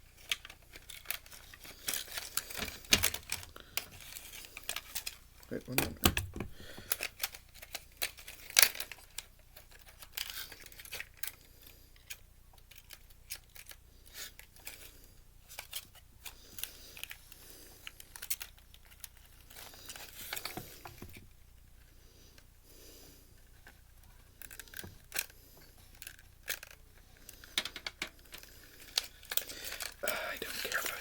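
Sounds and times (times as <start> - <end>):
plastic and metal parts snapping: 0.2 - 11.4.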